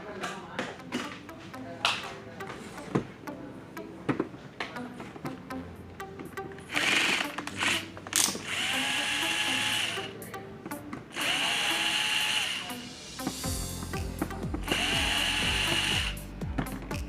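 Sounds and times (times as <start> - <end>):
cordless power driver whining: 6.7 - 10.2, 11.1 - 12.8, 14.6 - 16.2.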